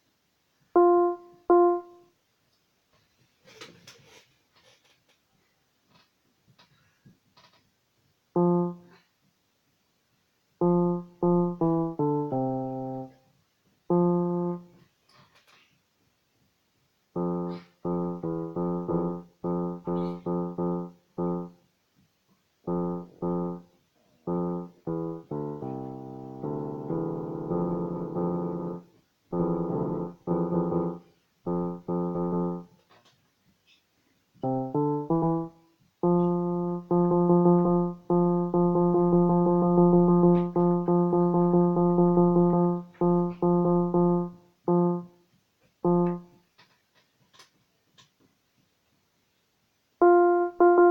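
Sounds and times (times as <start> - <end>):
electronic keyboard notes: 0.8 - 2.1, 8.4 - 8.9, 10.6 - 13.2, 13.9 - 14.8, 17.2 - 21.6, 22.7 - 23.7, 24.3 - 32.8, 34.4 - 45.2, 45.8 - 46.4, 50.0 - 50.9.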